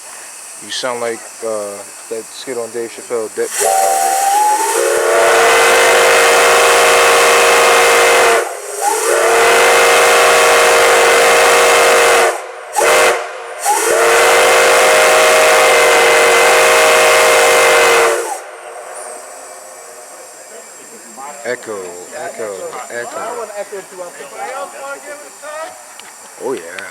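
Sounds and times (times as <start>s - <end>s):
hissing steam: 0.0s - 26.9s
steam whistle blasts: 3.5s - 20.2s.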